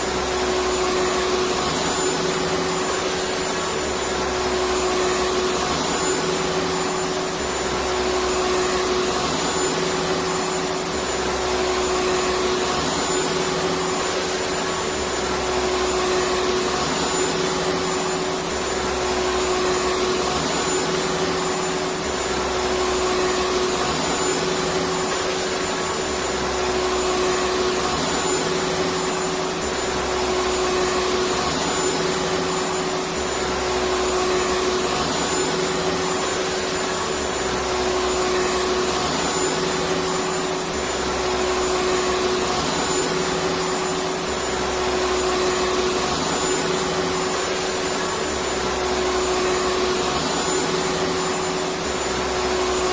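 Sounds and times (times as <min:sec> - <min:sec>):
vacuum cleaner running: 0:00.0 - 0:52.9.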